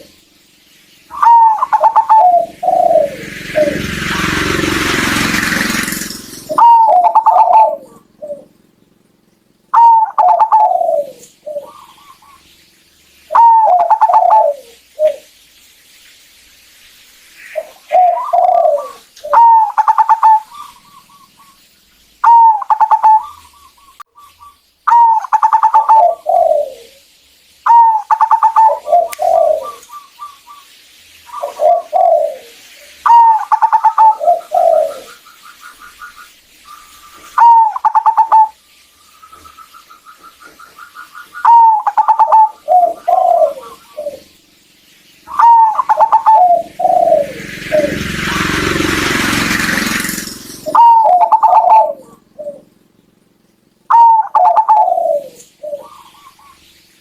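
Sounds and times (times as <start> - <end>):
dove cooing: 1.1 - 8.8, 9.7 - 12.5, 13.3 - 15.3, 17.5 - 21.6, 22.2 - 27.0, 27.7 - 30.7, 31.3 - 38.6, 39.3 - 44.4, 45.3 - 52.9, 53.8 - 56.7
rapid staccato bird notes: 1.2 - 7.7, 45.3 - 51.9.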